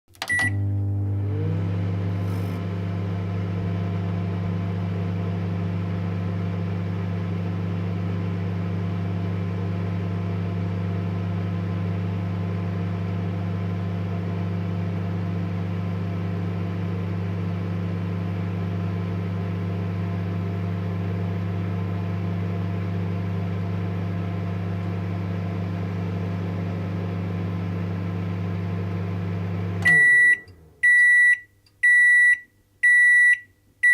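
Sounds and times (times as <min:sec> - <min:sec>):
microwave beep: 0:00.2 - 0:01.2, 0:29.8 - 0:33.9
microwave humming and whirring: 0:00.2 - 0:33.9.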